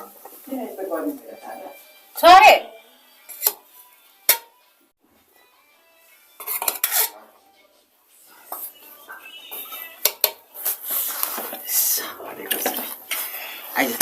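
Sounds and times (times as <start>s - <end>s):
cutlery and plates clinking: 3.3s - 3.7s, 6.4s - 7.3s, 8.4s - 10.4s, 12.4s - 13.3s.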